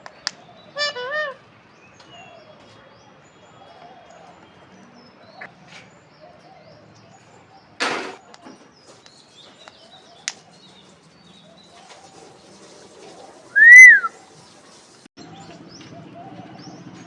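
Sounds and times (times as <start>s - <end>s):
parakeet call: 13.6s - 14.1s.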